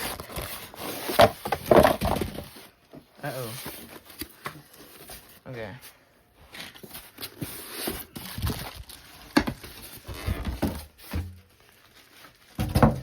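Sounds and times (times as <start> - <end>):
cardboard scraping and rustling: 6.5 - 13.0.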